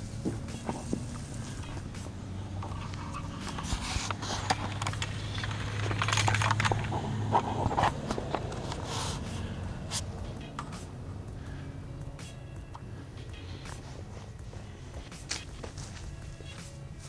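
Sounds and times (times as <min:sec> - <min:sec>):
low steady hum: 0:00.0 - 0:17.0
scraping and clicking handling noises: 0:02.6 - 0:10.8.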